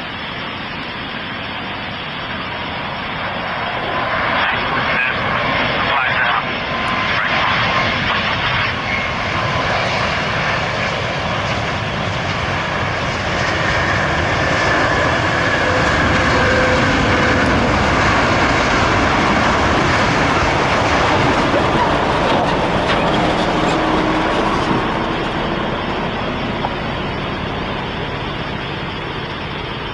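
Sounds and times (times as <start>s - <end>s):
jet engine rush: 0.0s - 29.9s
faint falling whines: 10.6s - 29.9s.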